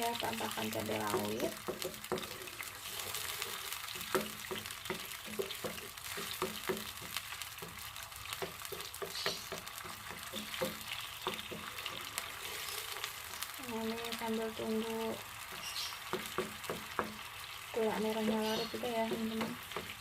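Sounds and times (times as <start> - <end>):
hot pan hissing: 0.0 - 20.0
spatula scraping pan: 1.1 - 13.4.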